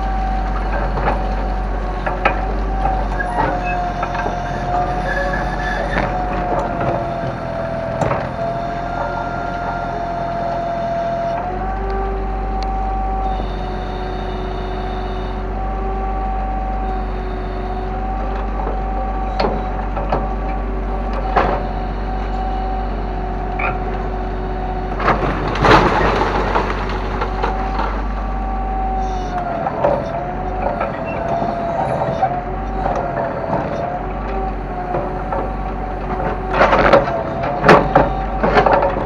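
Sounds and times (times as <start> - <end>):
excavator engine whining: 0.0 - 39.0
debris crashing: 25.0 - 33.8.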